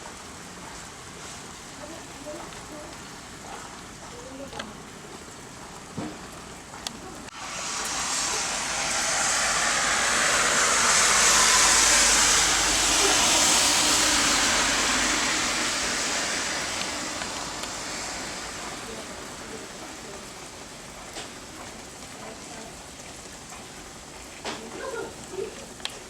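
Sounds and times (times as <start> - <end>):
low rumble: 7.3 - 20.9
loud rushing hiss: 7.3 - 22.1.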